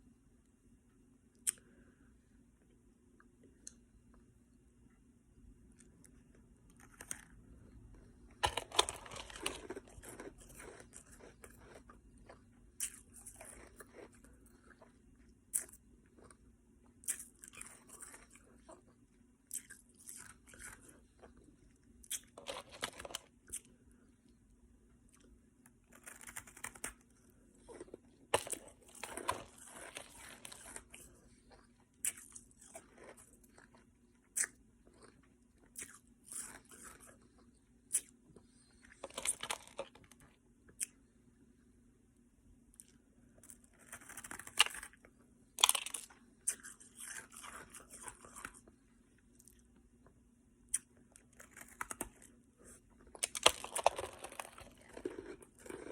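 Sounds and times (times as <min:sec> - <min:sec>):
ice crunching between teeth: 0:08.4 - 0:14.8, 0:22.1 - 0:23.7, 0:25.9 - 0:33.8, 0:38.8 - 0:40.2, 0:43.6 - 0:45.0, 0:45.6 - 0:48.6, 0:53.1 - 0:55.9.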